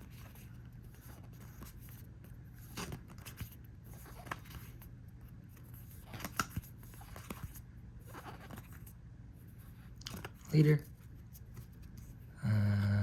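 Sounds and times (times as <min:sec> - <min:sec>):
low steady hum: 0:00.0 - 0:13.0
cards swishing and clicking: 0:05.6 - 0:08.9.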